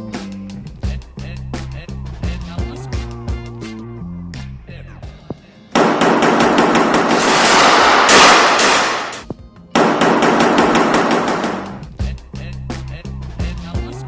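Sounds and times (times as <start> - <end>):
music playing: 0.0 - 14.0
rapid automatic gunfire: 5.8 - 9.2, 9.8 - 11.8.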